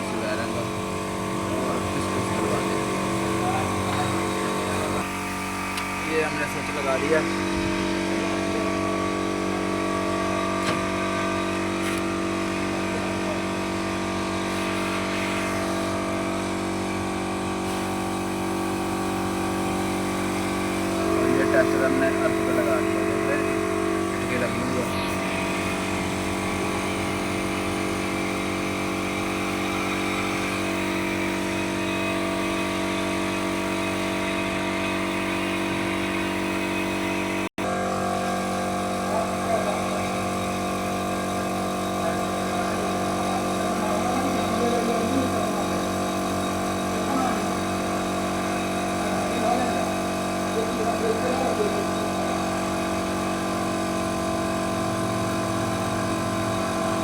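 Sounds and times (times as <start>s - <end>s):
engine droning hum: 0.0s - 13.6s, 20.7s - 27.6s.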